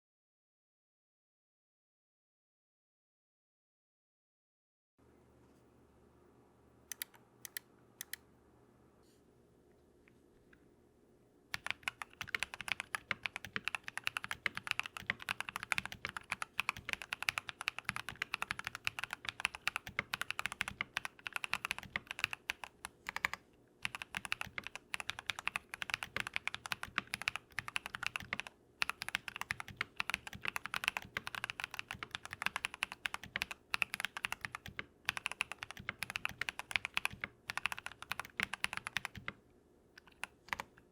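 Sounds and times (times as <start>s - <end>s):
mechanical keyboard typing: 6.9s - 8.2s, 11.5s - 39.4s, 40.0s - 40.8s.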